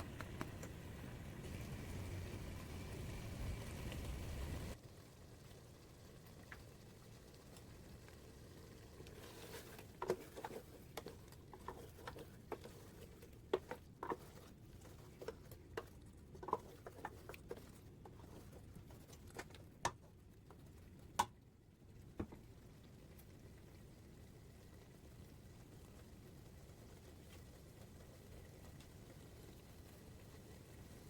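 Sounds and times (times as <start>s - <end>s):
sharp clicks and taps: 0.0s - 0.8s
faint steady background noise: 0.0s - 31.0s.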